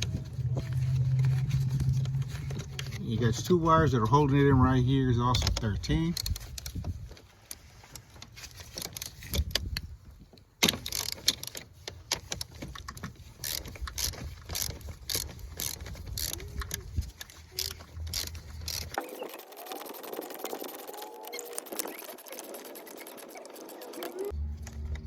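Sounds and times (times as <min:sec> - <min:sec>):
low hum: 0:00.0 - 0:05.6, 0:17.8 - 0:25.0
socket ratchet clicking: 0:10.6 - 0:19.0.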